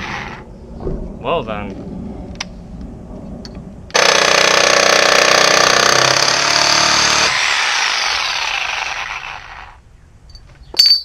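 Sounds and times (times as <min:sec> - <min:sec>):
electric saw cutting metal: 0:03.9 - 0:09.8.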